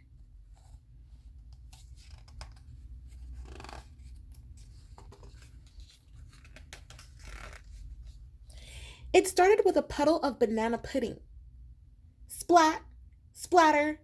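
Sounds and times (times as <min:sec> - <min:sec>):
pages of book turning: 0:00.5 - 0:08.2.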